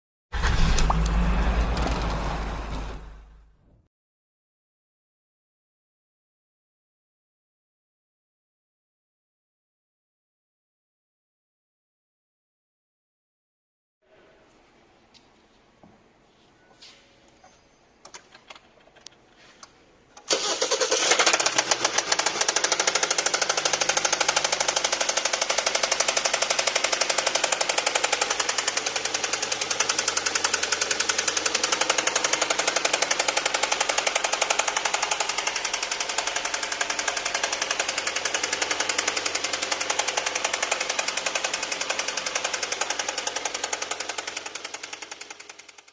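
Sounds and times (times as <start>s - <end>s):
car engine starting: 0.4s - 3.7s, 20.3s - 25.5s
engine knocking: 21.2s - 45.9s.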